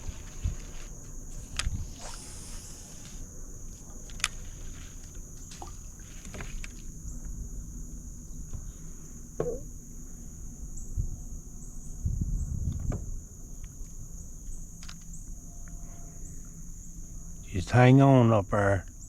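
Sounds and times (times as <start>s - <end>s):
knocks and clicks in boat: 0.0s - 2.3s, 3.0s - 7.4s, 8.4s - 9.8s, 12.6s - 15.1s
insects droning: 0.0s - 19.0s.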